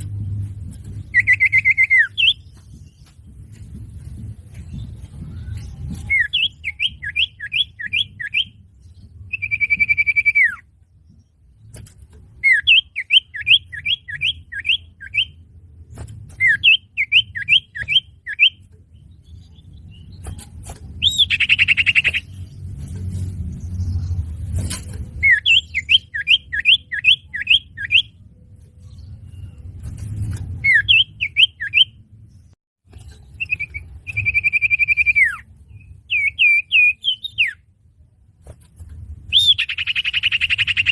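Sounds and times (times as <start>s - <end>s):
low rumble: 0.0s - 7.1s, 18.9s - 25.8s
bird song whistles: 0.9s - 3.1s, 4.7s - 10.7s, 12.4s - 15.4s, 16.3s - 22.4s, 25.2s - 28.2s, 30.6s - 32.0s, 33.3s - 37.7s, 39.3s - 40.9s.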